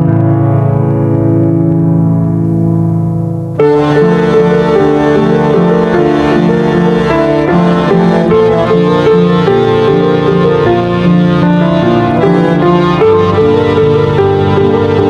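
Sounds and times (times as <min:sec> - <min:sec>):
brisk piano and strings music: 0:03.4 - 0:15.0.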